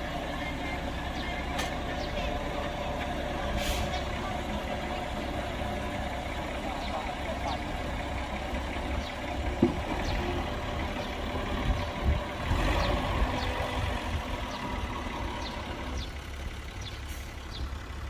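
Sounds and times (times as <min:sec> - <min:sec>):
heavy machinery engine running: 0:00.0 - 0:18.0.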